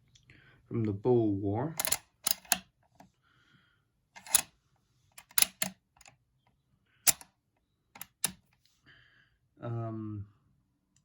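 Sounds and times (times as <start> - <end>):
rifle clicks and knocks: 1.8 - 2.7.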